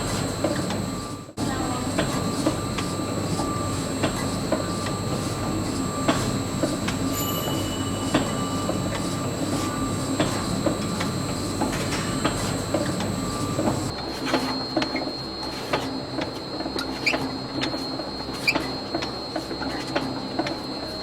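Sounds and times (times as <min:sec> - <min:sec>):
machinery humming: 0:00.0 - 0:21.0
thin high mechanical tone: 0:07.0 - 0:10.2.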